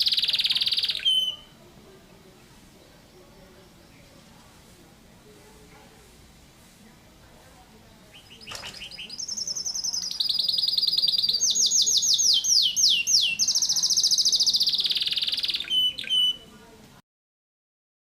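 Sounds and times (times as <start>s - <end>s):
canary singing fast trills: 0.0s - 1.6s, 7.9s - 16.5s.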